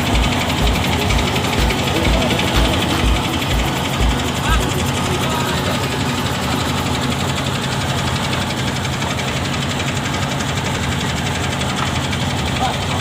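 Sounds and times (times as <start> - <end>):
boat engine humming: 0.0 - 13.0.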